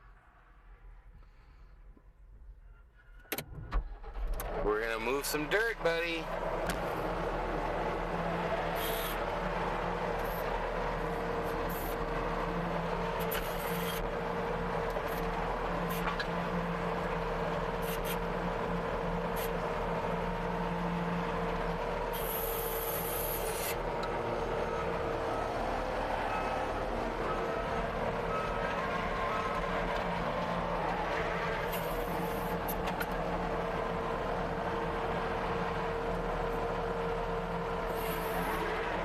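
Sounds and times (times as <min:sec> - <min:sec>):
skid steer engine running: 0:03.3 - 0:39.0.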